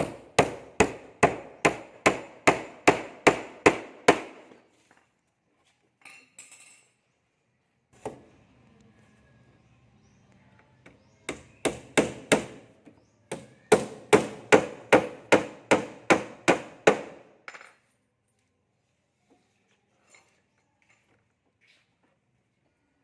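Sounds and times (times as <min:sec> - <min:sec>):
hammer striking wood: 0:00.0 - 0:04.6, 0:11.3 - 0:12.7, 0:13.3 - 0:17.6.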